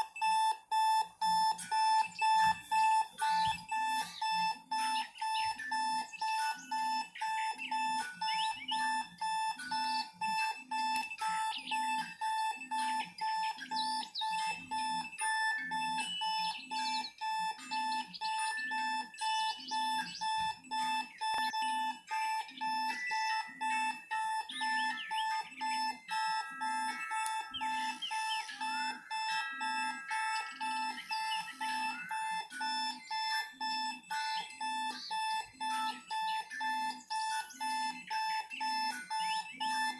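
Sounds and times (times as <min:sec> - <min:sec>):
low pulsing beep: 0:00.0 - 0:39.9
steady high alarm tone: 0:00.0 - 0:39.9.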